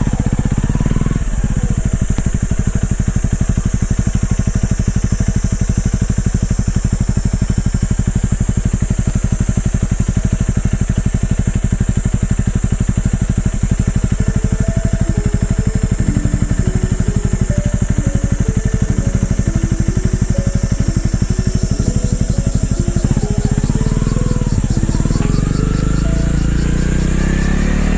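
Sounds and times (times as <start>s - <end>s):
motorcycle engine idling: 0.0s - 27.9s.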